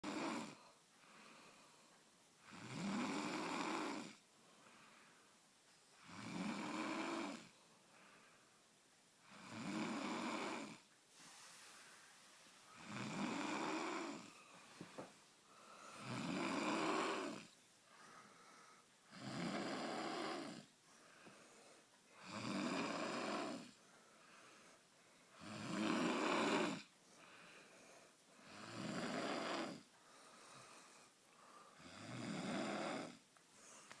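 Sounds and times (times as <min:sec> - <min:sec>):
child snoring: 0:00.0 - 0:00.6, 0:02.4 - 0:04.2, 0:06.0 - 0:07.6, 0:09.2 - 0:10.9, 0:12.7 - 0:14.4, 0:15.8 - 0:17.6, 0:19.1 - 0:20.7, 0:22.2 - 0:23.8, 0:25.4 - 0:26.9, 0:28.4 - 0:29.9, 0:31.7 - 0:33.2
quiet breathing: 0:00.0 - 0:34.0.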